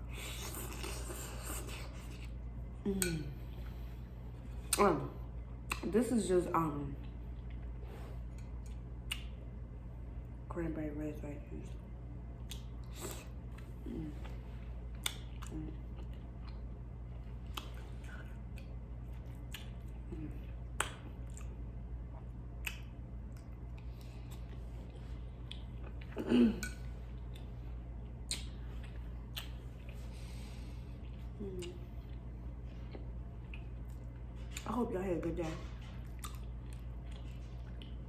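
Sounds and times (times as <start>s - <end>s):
chewing: 7.0s - 9.4s, 12.4s - 38.0s
sharp mouth clicks: 28.3s - 28.6s.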